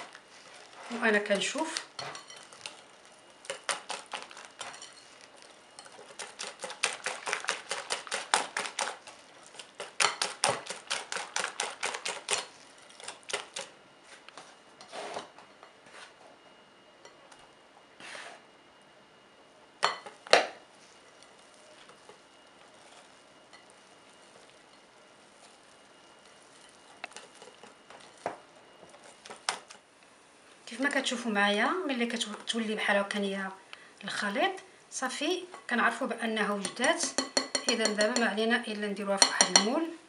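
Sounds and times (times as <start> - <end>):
utensil beating batter in bowl: 0.0 - 14.5, 21.1 - 29.8, 36.4 - 39.8.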